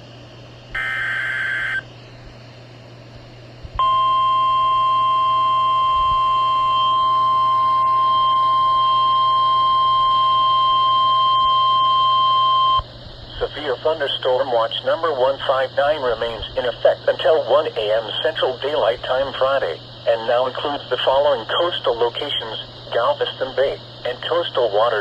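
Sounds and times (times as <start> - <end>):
steady high warning tone: 0.7 - 1.9, 3.8 - 25.0
screechy digital data burst: 0.8 - 1.8.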